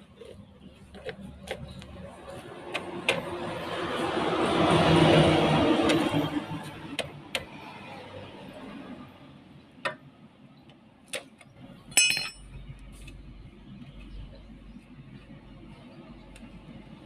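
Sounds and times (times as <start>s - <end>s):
metal parts clicking and clinking: 11.9s - 12.4s.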